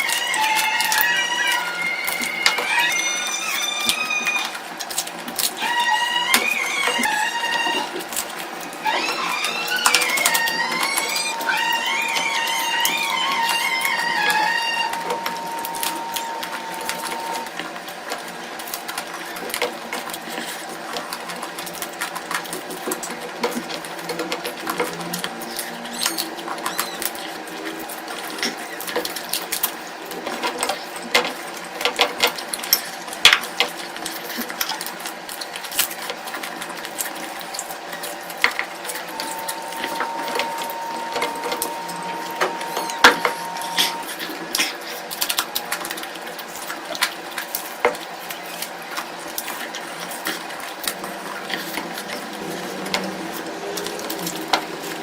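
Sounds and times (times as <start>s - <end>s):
wet chewing: 0.0s - 31.4s.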